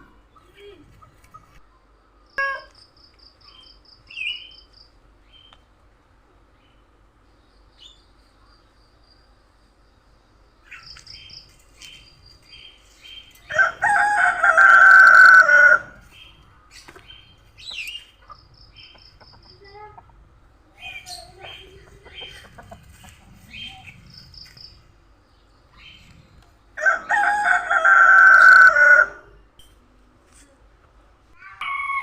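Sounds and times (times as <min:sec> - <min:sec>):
rooster crowing: 0:13.5 - 0:16.0, 0:26.8 - 0:29.3, 0:31.5 - 0:32.0.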